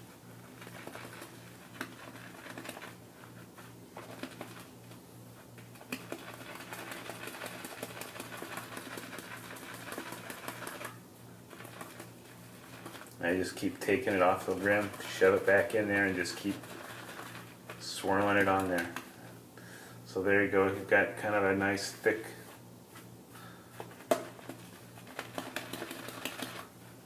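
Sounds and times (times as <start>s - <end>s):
shaving brush swirling on soap: 0.1s - 4.8s, 5.6s - 19.1s.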